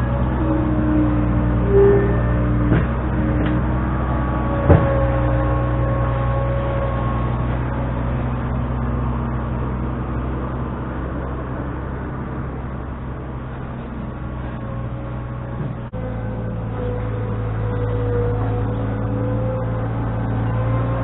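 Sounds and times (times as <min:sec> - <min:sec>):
engine running steadily: 0:00.0 - 0:21.0.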